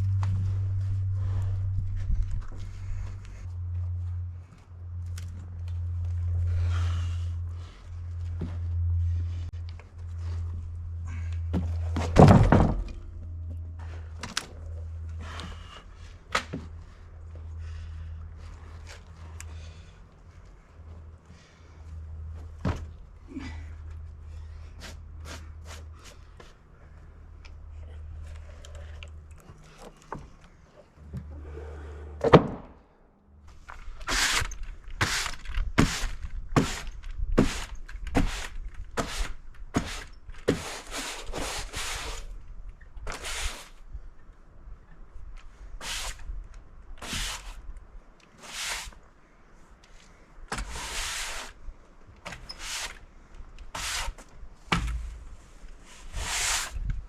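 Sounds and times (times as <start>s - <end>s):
low hum: 0.0s - 40.3s
heavy wooden thunk: 11.5s - 13.1s, 32.2s - 32.8s, 54.7s - 55.3s
brush sweeping sawdust: 34.1s - 42.3s, 45.8s - 46.2s, 47.0s - 47.6s, 48.4s - 49.0s, 50.6s - 51.6s, 52.6s - 53.0s, 53.7s - 54.3s, 55.8s - 56.8s.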